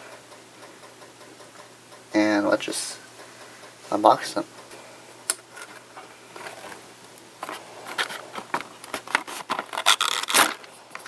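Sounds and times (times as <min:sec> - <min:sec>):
packaging being opened: 0:07.4 - 0:11.0.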